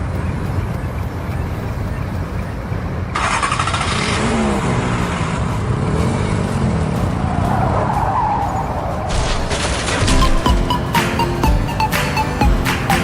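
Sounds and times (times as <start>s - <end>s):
tyres skidding: 0.0s - 13.0s
car engine revving: 3.2s - 10.4s.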